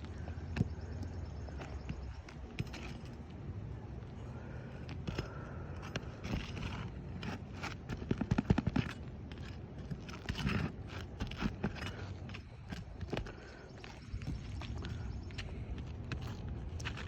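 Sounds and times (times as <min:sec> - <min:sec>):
scraping on roof shingles: 0:04.4 - 0:17.0.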